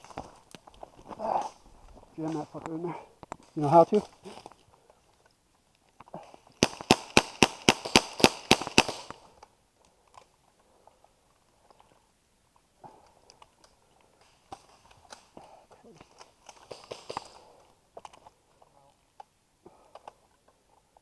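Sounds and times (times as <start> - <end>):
faint clicks and rustles: 0.0 - 7.0, 8.9 - 21.0
airsoft gun shots: 6.6 - 9.2.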